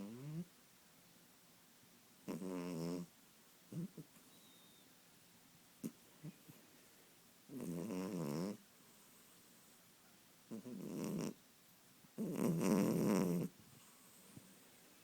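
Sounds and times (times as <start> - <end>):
kitten snoring: 0.0 - 0.5, 2.2 - 3.1, 3.7 - 4.8, 7.5 - 8.6, 10.5 - 11.4, 12.2 - 14.2.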